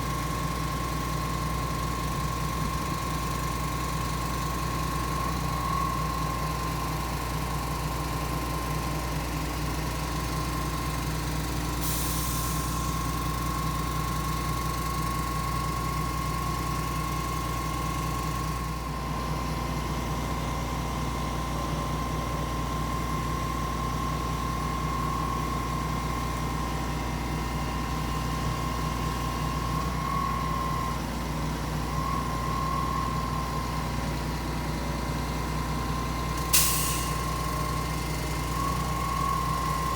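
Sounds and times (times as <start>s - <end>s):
concrete pump engine drone: 0.0s - 39.9s
brief hiss: 36.4s - 37.3s.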